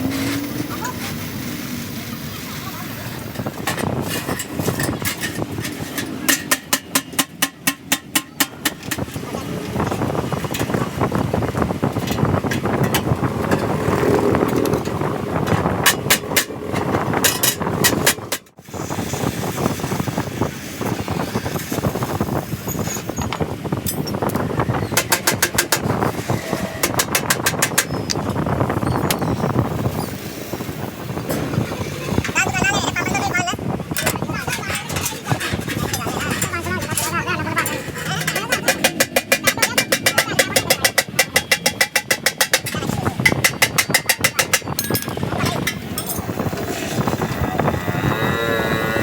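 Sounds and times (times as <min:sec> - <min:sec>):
traffic noise: 0:00.0 - 0:49.0
workshop noise: 0:00.0 - 0:49.0
rapid hammer blows: 0:34.0 - 0:47.7.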